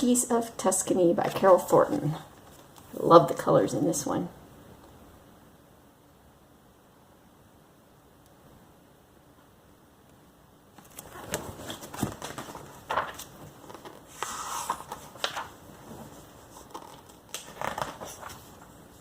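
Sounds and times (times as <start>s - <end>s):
magazine pages rustling: 1.2s - 3.0s, 10.8s - 19.0s
page swish: 10.8s - 18.7s.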